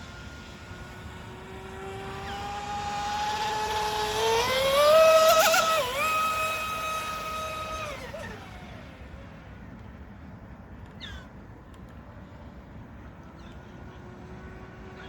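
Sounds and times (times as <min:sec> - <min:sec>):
electric motor whine: 0:00.0 - 0:09.2.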